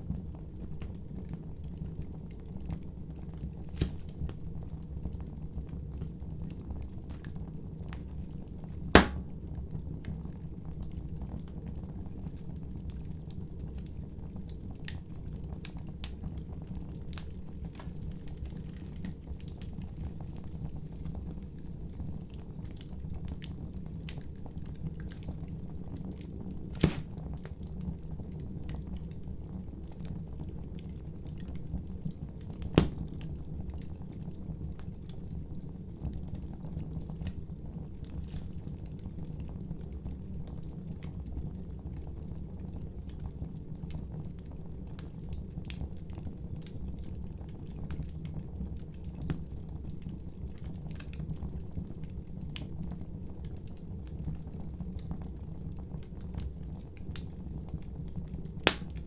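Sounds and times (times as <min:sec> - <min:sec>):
campfire flames rumbling: 0:00.0 - 0:59.0
sharp loud pops: 0:09.0 - 0:09.3, 0:26.8 - 0:27.1, 0:58.7 - 0:59.0
fire crackling: 0:09.0 - 0:09.5, 0:26.2 - 0:27.8, 0:58.7 - 0:59.0.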